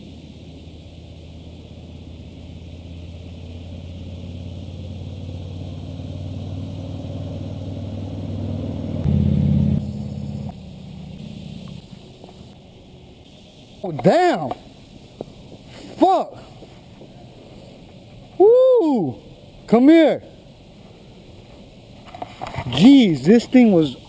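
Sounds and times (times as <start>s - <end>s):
motor vehicle driving by: 1.6s - 12.6s.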